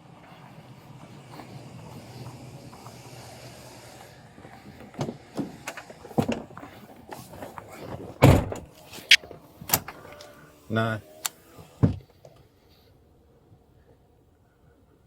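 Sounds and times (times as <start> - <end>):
low vehicle hum: 0.0 - 9.4
knocks and thuds: 11.8 - 12.0.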